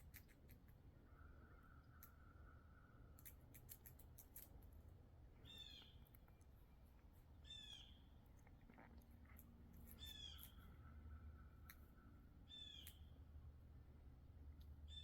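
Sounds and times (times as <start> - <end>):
squirrel gnawing walnut shell: 0.0 - 11.9.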